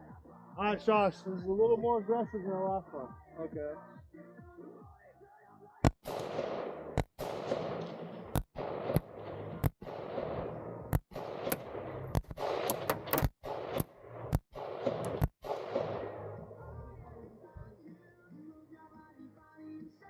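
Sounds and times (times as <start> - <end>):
semi-automatic gunshots with echo: 5.8 - 16.6.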